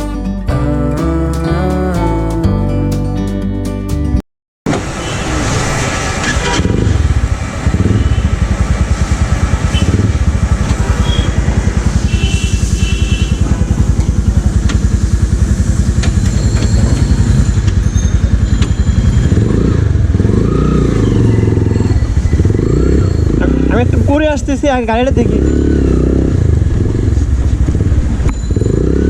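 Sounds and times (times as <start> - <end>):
motorcycle engine idling: 6.8 - 29.0.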